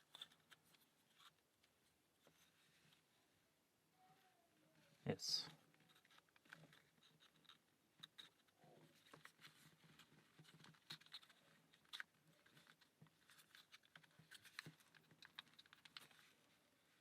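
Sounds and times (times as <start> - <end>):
wooden puzzle parts clicking: 5.9 - 16.2.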